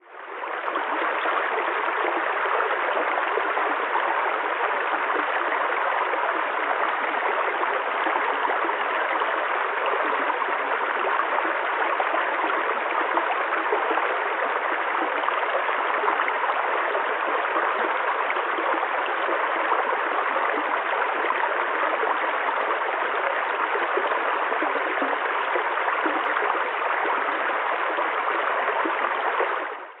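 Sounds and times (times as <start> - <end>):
stream water rushing: 0.1 - 30.0.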